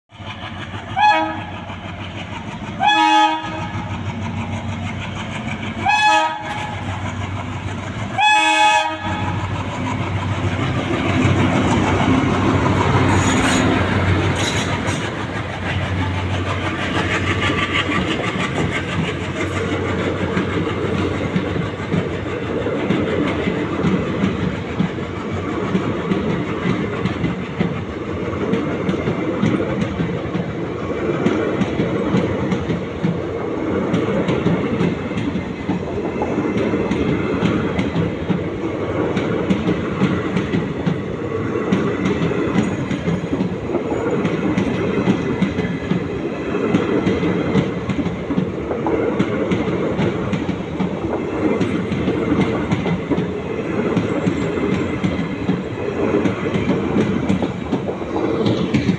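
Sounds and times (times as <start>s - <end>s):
train wheels clattering on rails: 0.1s - 58.9s
locomotive engine chugging: 0.2s - 27.6s
diesel locomotive horn: 1.0s - 1.7s, 2.8s - 3.9s, 5.8s - 7.0s, 8.1s - 9.6s.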